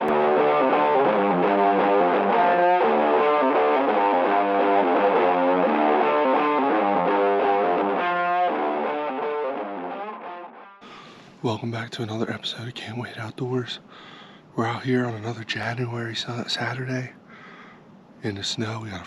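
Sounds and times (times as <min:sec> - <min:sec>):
distorted electric guitar riff: 0:00.0 - 0:11.0.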